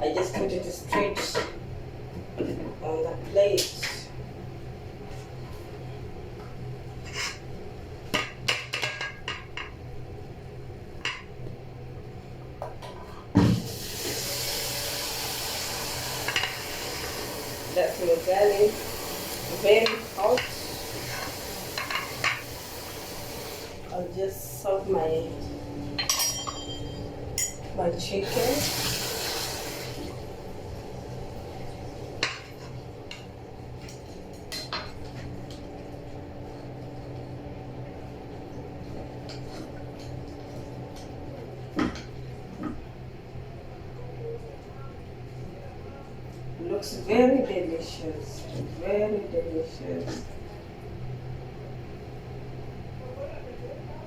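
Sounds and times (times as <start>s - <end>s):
spoon scraping in a pot: 7.0s - 7.4s
spoon clinking against dishes: 26.0s - 27.7s.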